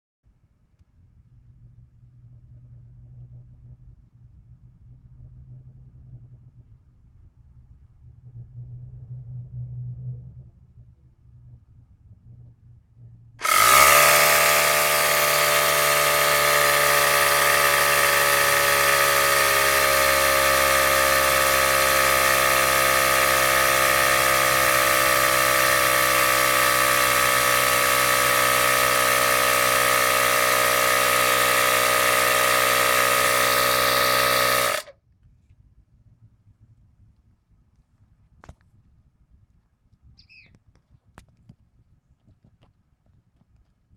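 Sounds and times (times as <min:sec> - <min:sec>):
air compressor motor running: 0:13.4 - 0:34.9.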